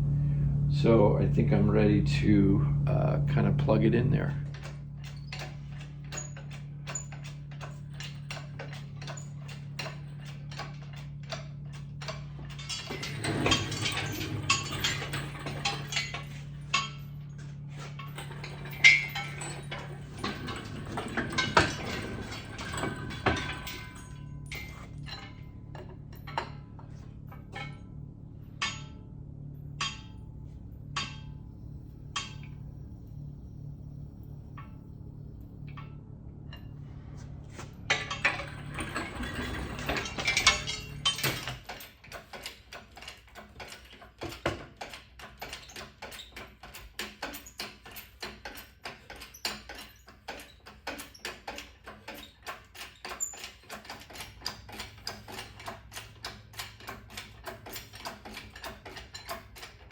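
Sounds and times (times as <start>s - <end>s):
portable generator humming: 0.0s - 42.0s
metal tools clinking: 3.6s - 36.8s, 37.6s - 59.9s.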